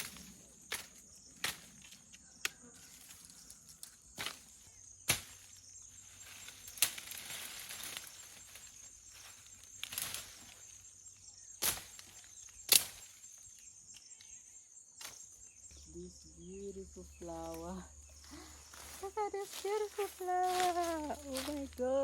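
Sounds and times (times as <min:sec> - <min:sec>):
crickets chirping: 0:00.0 - 0:22.0
machete chopping wood: 0:05.1 - 0:05.4
rustle of brush: 0:05.2 - 0:11.0, 0:18.3 - 0:22.0.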